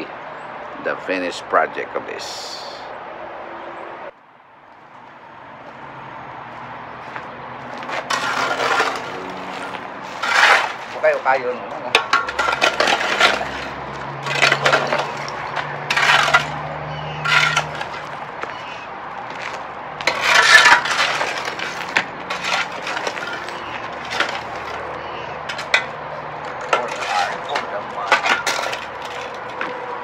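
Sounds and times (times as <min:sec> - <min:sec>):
rubble clattering and scraping: 0:07.6 - 0:30.0.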